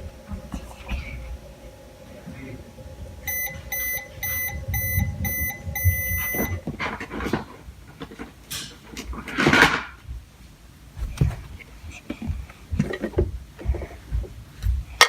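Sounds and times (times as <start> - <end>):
toy microwave beeping: 3.3 - 6.6.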